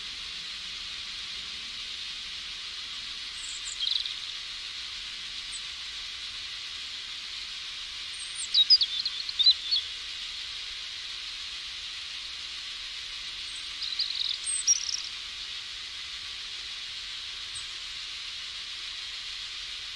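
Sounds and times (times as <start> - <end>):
rain hissing: 0.0 - 19.9
bird chirping: 3.4 - 4.3, 8.2 - 9.9, 13.4 - 15.2.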